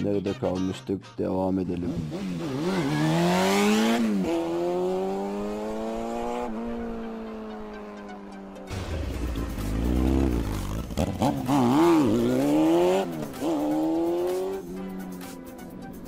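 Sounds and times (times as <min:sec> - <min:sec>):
race car engine revving: 0:01.9 - 0:07.5, 0:08.8 - 0:15.0.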